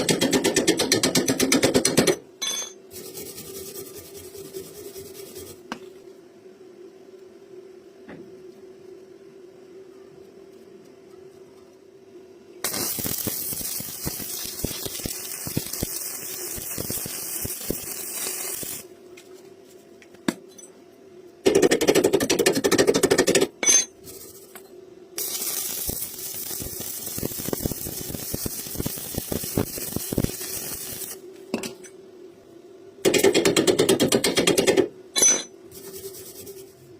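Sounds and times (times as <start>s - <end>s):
faint steady hum: 1.2s - 36.9s
arc welding crackling hiss: 12.6s - 19.4s, 25.2s - 31.4s.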